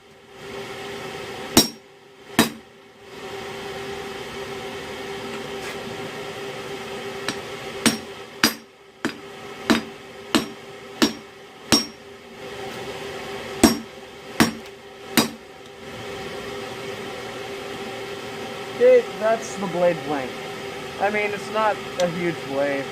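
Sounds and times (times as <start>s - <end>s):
steady hum: 0.0s - 22.9s
hammer striking steel on anvil: 1.6s - 1.8s, 2.4s - 2.6s, 7.3s - 12.0s, 13.6s - 15.4s.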